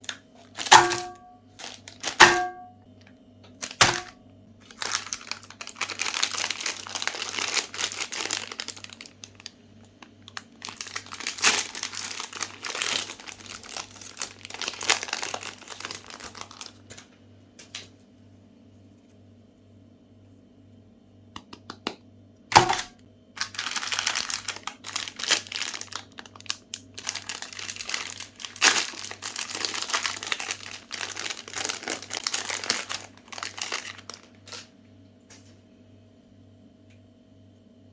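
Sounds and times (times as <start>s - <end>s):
wrappers crinkling and tearing: 0.0s - 2.7s, 3.5s - 17.9s, 22.5s - 34.8s.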